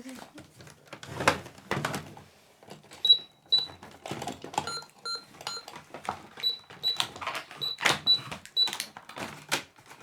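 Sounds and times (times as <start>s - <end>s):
toy cash register beeping: 3.0s - 8.9s.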